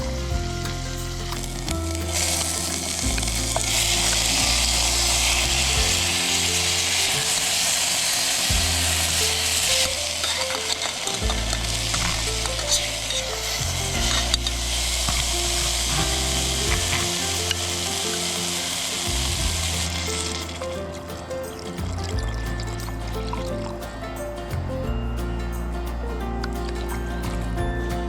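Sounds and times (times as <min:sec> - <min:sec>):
vegetables sizzling in a pan: 0:02.1 - 0:10.9.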